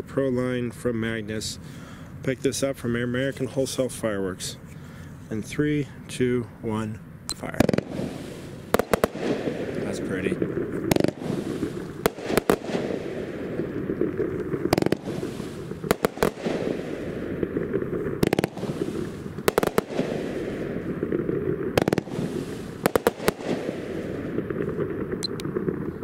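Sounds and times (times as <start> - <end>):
steady background noise: 0.0 - 26.0
fireworks bangs: 7.4 - 26.0.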